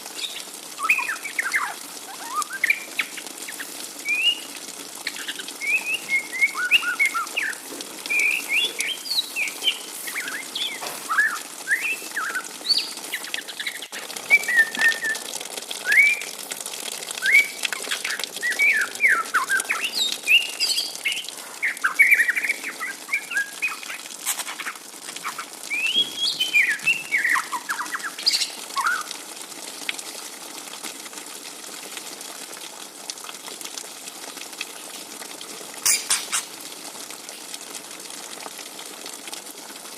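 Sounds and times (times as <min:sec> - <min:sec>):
young bird twittering chirps: 0:17.3 - 0:29.0, 0:35.8 - 0:36.5.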